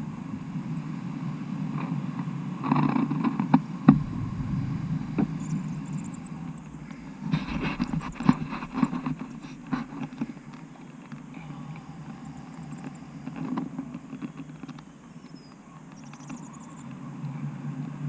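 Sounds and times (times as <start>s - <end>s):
knocks and rattles: 3.9s - 10.2s
wind buffeting microphone: 3.9s - 10.7s.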